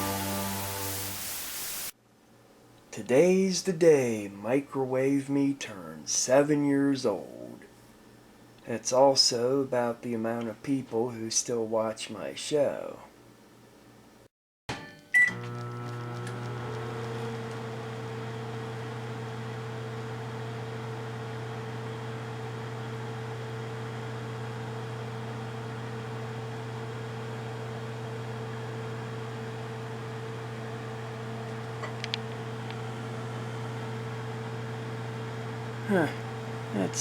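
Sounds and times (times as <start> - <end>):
microwave oven humming: 14.8 - 37.0.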